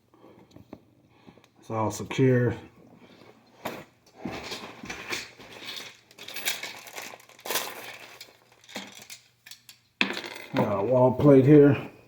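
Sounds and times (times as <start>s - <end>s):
plastic parts crinkling: 3.6s - 9.8s.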